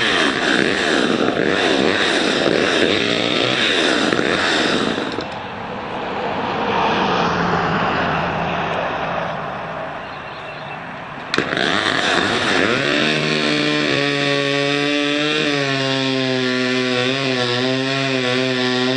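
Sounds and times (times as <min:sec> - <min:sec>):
chainsaw revving: 0:00.0 - 0:05.4, 0:11.3 - 0:18.9.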